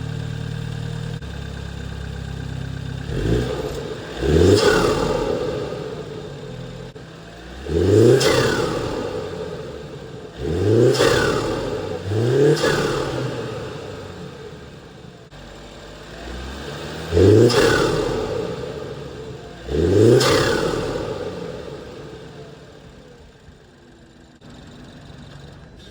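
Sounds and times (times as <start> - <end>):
car engine revving: 0.0 - 25.9.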